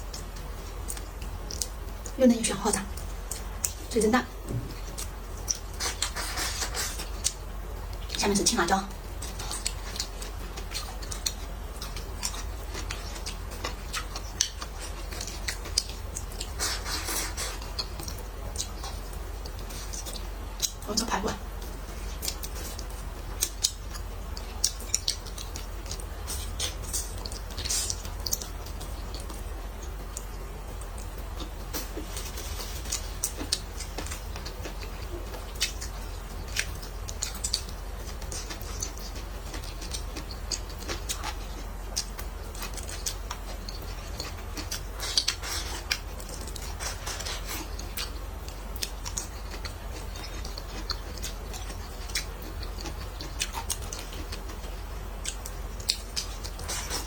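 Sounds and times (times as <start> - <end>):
low steady hum: 0.0 - 57.0
crisp chewing crunches: 21.6 - 57.0.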